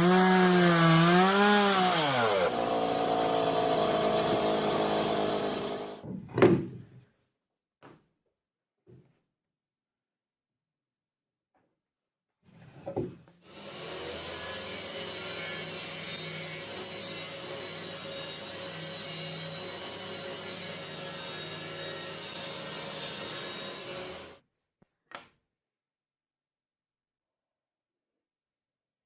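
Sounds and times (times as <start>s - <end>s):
saw cutting through wood: 0.0s - 6.0s, 13.4s - 24.4s.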